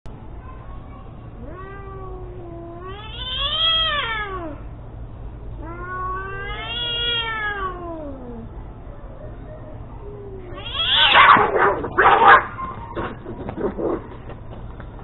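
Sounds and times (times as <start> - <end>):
low steady hum: 0.1 - 15.0
cats yowling: 1.4 - 4.6, 5.6 - 14.1.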